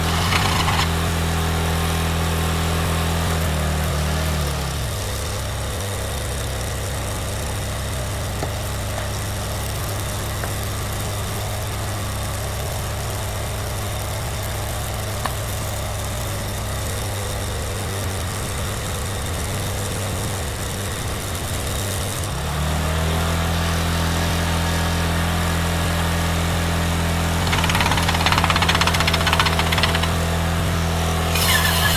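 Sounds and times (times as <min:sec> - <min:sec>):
engine-driven welder running: 0:00.0 - 0:03.2, 0:25.5 - 0:31.9.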